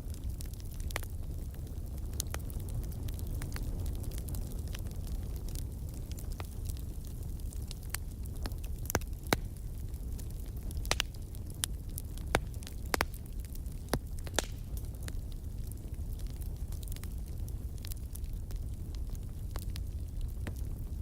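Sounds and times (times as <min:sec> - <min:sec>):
low rumble of burning fire: 0:00.0 - 0:21.0
wood fire crackling and popping: 0:00.0 - 0:21.0.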